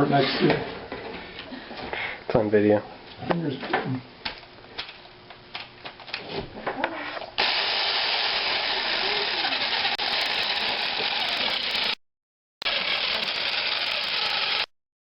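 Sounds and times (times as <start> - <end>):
electric jigsaw cutting: 7.4 - 12.0, 12.6 - 14.7.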